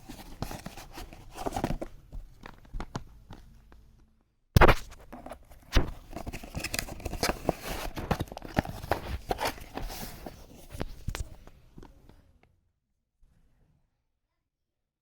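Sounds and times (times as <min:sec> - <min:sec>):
packaging crinkling: 0:04.8 - 0:10.8.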